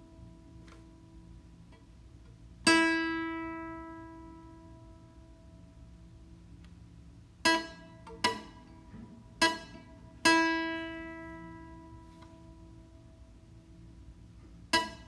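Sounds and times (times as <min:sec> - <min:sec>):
plucked string notes: 0:02.6 - 0:05.5, 0:07.4 - 0:13.1, 0:14.6 - 0:15.0.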